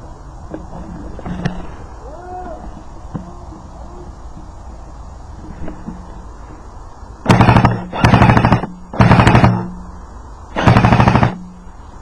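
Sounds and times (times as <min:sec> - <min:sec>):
steady hum: 0:00.0 - 0:12.0
airsoft gun full-auto bursts: 0:07.2 - 0:09.7, 0:10.5 - 0:11.4.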